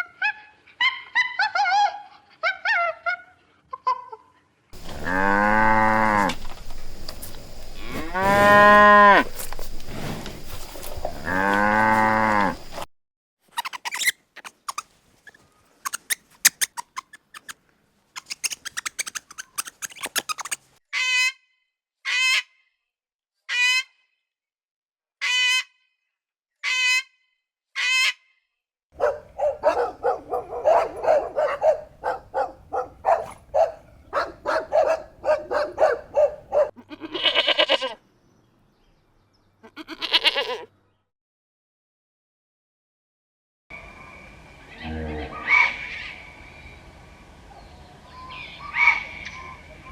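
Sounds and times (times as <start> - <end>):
farm animal calls: 4.8 - 12.8, 13.6 - 17.6, 18.2 - 21.2, 29.0 - 38.0, 39.6 - 40.7, 44.7 - 46.3, 48.2 - 49.9.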